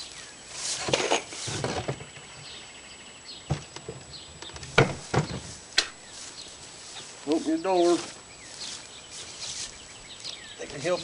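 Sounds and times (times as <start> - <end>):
hay rustling and scraping: 0.0 - 2.0, 4.7 - 11.0
sharp knocks of baler parts: 4.6 - 6.0.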